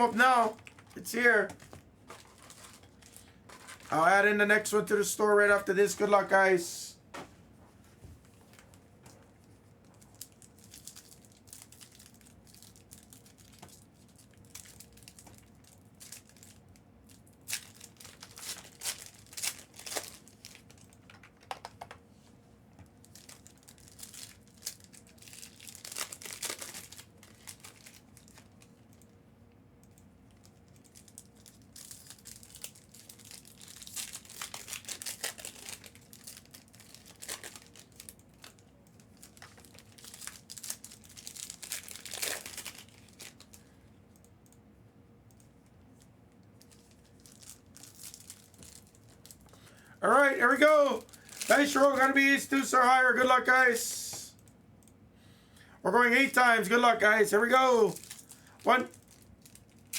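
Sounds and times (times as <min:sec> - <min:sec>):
plastic wrapping crinkling and tearing: 0:00.0 - 0:04.0, 0:09.8 - 0:21.7, 0:23.0 - 0:29.1, 0:29.9 - 0:43.6, 0:46.6 - 0:49.6, 0:50.8 - 0:52.3, 0:57.9 - 0:59.9.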